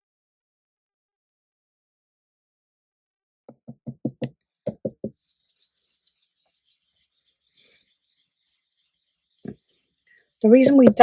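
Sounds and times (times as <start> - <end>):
knocks: 3.5 - 5.2
brush dabbing on card: 5.1 - 11.0.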